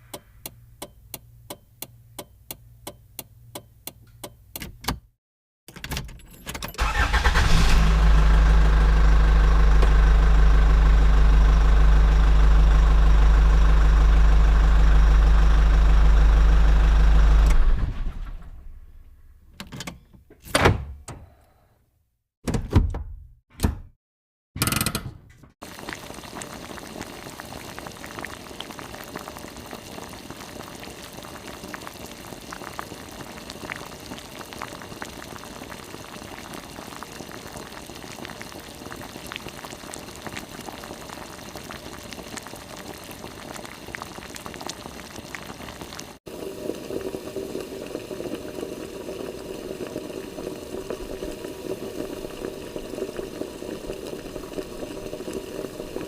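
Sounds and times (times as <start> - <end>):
liquid bubbling: 25.6 - 56.0.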